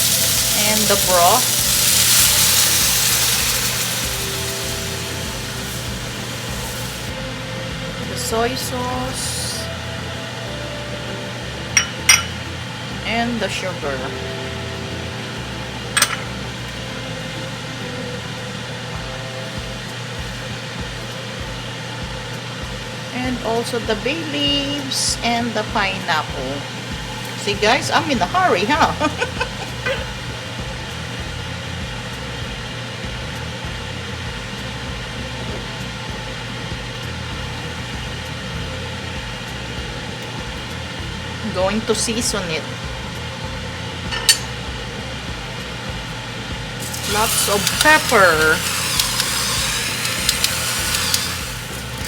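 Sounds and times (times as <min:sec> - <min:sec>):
even hiss: 0:00.0 - 0:18.2, 0:41.4 - 0:52.0
fan whirring: 0:00.0 - 0:52.0
mechanical hum: 0:00.0 - 0:52.0
sharp clink: 0:44.1 - 0:44.6.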